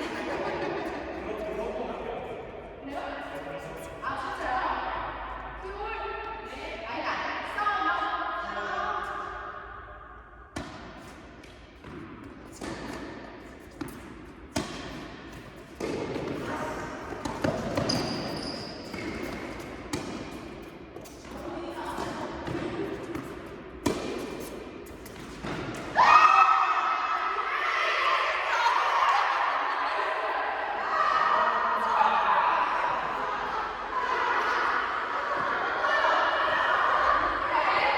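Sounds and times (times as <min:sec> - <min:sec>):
tennis ball bouncing: 0:10.6 - 0:25.9
racket hitting tennis ball: 0:10.6 - 0:26.0.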